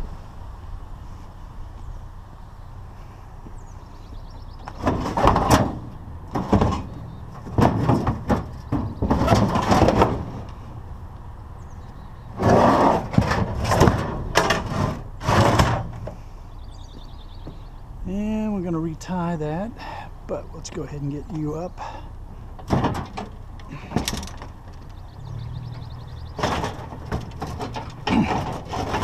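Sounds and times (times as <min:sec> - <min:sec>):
scrap metal clattering and scraping: 0:04.7 - 0:10.7, 0:12.3 - 0:16.3, 0:22.4 - 0:25.0, 0:25.8 - 0:29.0.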